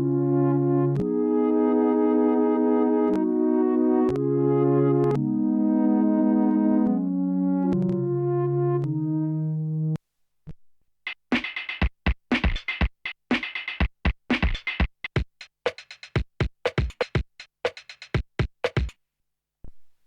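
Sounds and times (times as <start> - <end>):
synthesizer held chord: 0.0 - 10.0
synth drum rhythmic pattern: 11.1 - 18.9.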